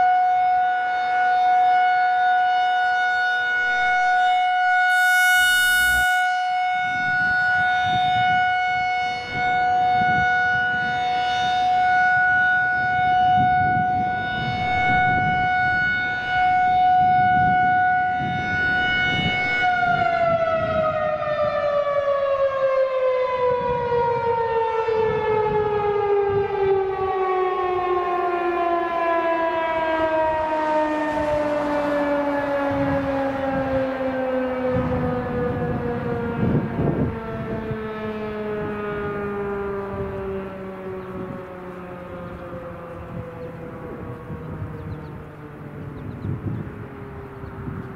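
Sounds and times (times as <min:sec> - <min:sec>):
electronic warning siren: 0:00.0 - 0:47.9
wind buffeting microphone: 0:05.8 - 0:47.9.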